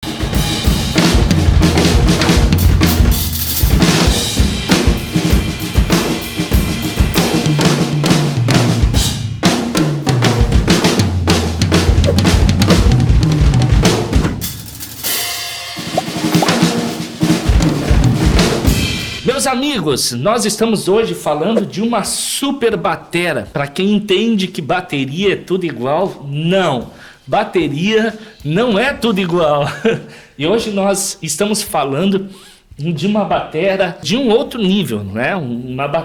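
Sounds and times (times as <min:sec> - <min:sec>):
drum kit playing: 0:00.0 - 0:19.6.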